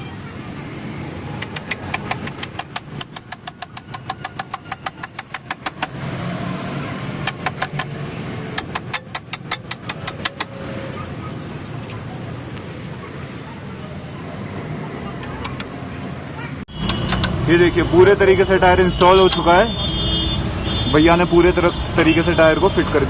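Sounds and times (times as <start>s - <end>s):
low traffic hum: 0.0s - 23.0s
ratchet wrench clicking: 1.4s - 6.0s, 7.2s - 7.9s, 8.6s - 10.5s.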